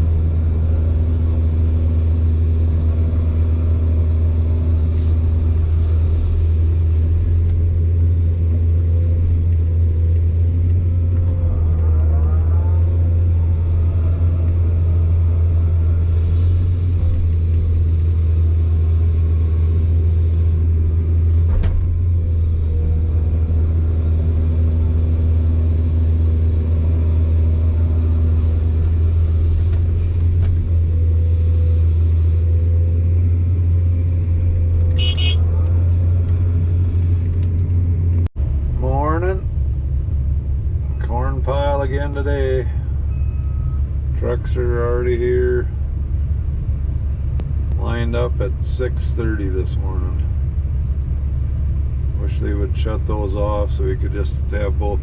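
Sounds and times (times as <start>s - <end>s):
wavering whine: 0.0s - 38.0s
diesel engine idling: 0.0s - 55.0s.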